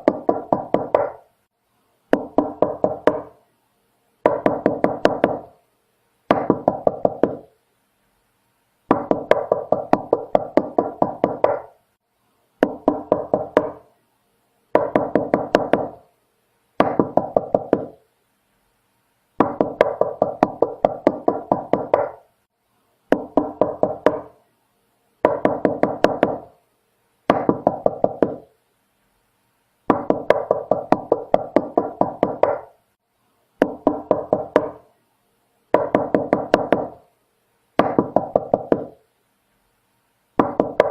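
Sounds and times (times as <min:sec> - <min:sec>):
rapid knocking on a door: 0:00.0 - 0:01.2, 0:02.1 - 0:03.3, 0:04.2 - 0:05.5, 0:06.3 - 0:07.5, 0:08.9 - 0:11.7, 0:12.6 - 0:13.8, 0:14.8 - 0:16.0, 0:16.8 - 0:18.0, 0:19.4 - 0:22.2, 0:23.1 - 0:24.3, 0:25.2 - 0:26.5, 0:27.3 - 0:28.5, 0:29.9 - 0:32.7, 0:33.6 - 0:34.8, 0:35.7 - 0:37.0, 0:37.8 - 0:39.0, 0:40.4 - 0:40.9.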